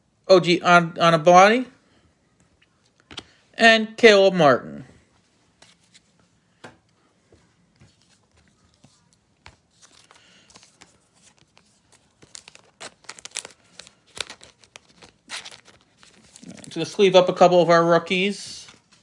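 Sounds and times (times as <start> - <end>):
packaging crinkling and rustling: 7.9 - 17.2.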